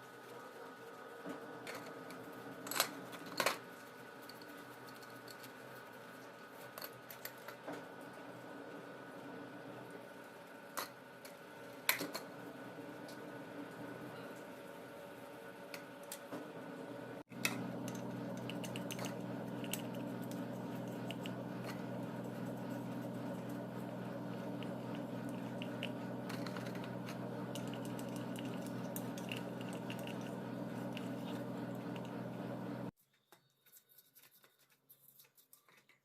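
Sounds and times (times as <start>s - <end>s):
steady low hum: 16.5s - 32.9s.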